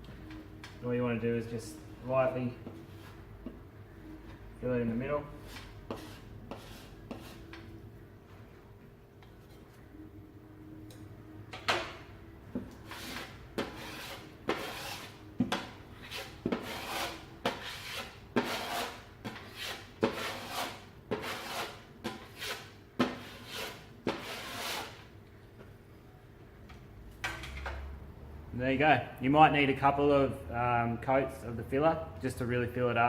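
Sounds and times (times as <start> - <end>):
putty knife scraping plaster wall: 5.5 - 7.5, 12.9 - 25.1.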